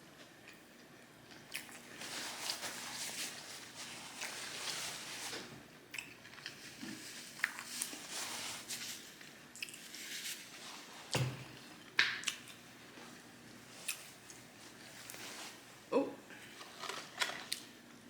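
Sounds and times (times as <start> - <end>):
chewing food: 0.4 - 2.0, 5.9 - 8.0.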